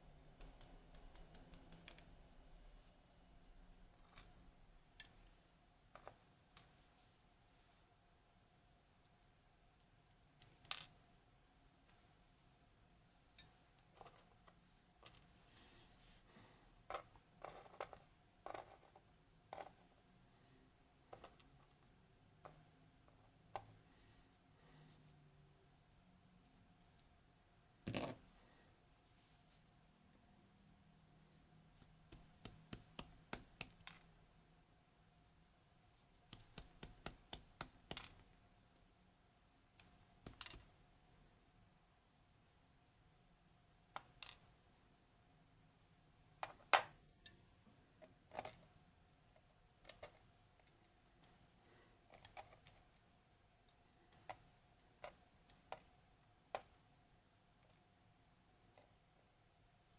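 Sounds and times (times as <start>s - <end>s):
small clicks and metallic taps: 0.4s - 2.1s, 32.1s - 34.1s, 49.4s - 51.4s, 53.7s - 56.8s.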